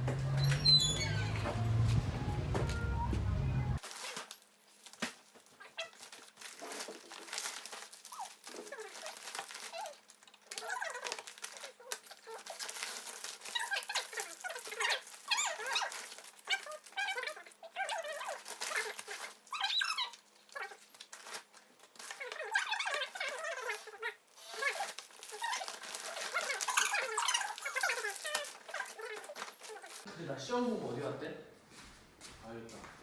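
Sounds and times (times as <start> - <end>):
light pattering and rustling: 0.0 - 30.1
small animal squeaky whines and yelps: 0.2 - 1.6, 8.1 - 20.8, 22.0 - 30.1.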